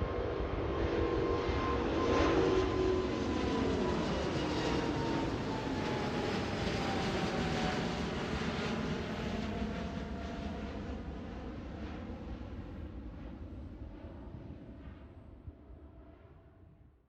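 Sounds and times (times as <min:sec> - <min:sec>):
jet engines roaring and whining: 0:00.0 - 0:13.3.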